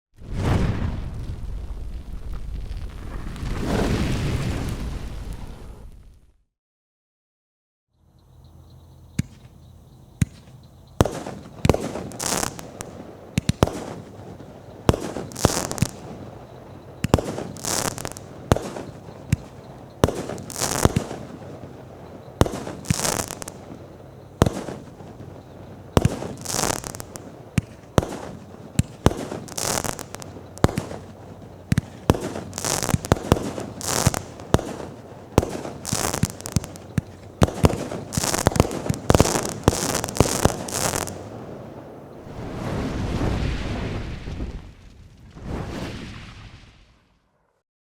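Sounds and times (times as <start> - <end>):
crackling hissing firework breaks: 0.2 - 5.8, 10.2 - 44.8
firework launch thumps: 9.2 - 9.6, 10.2 - 41.4.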